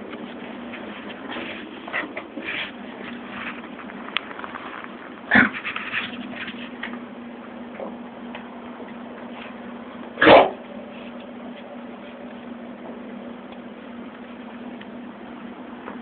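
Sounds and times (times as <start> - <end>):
dog coughing: 5.3 - 5.6, 10.2 - 10.6.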